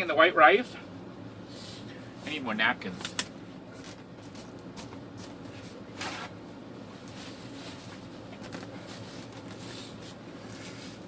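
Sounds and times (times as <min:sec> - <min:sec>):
low mechanical hum: 0:00.0 - 0:11.0
paper rustling: 0:07.1 - 0:11.0.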